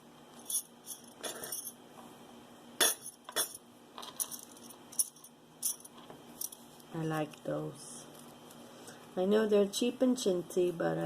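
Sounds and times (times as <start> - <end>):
metal jewelry clinking: 0.4 - 1.8, 2.8 - 6.7.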